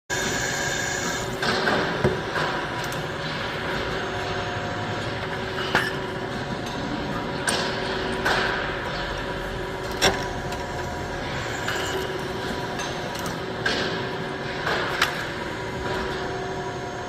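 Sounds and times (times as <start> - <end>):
machine tool whining: 0.1 - 1.4.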